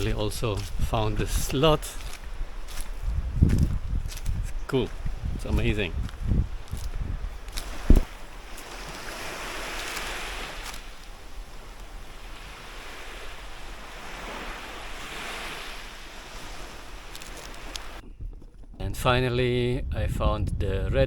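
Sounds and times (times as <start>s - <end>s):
waves washing on a shore: 0.0s - 4.2s, 6.6s - 18.0s
short thump: 7.6s - 8.2s.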